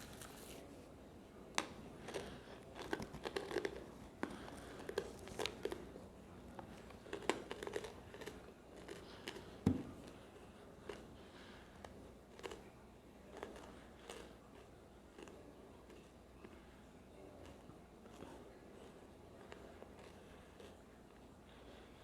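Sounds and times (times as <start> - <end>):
firm knock: 9.6 - 9.9.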